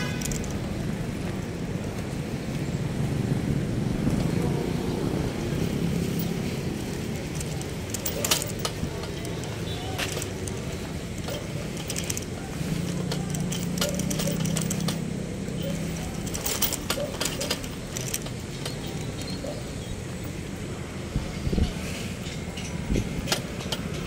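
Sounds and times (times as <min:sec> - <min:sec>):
scattered clicks and knocks: 0:00.0 - 0:01.5, 0:06.0 - 0:20.4, 0:21.6 - 0:24.0
engine hum: 0:00.0 - 0:24.0.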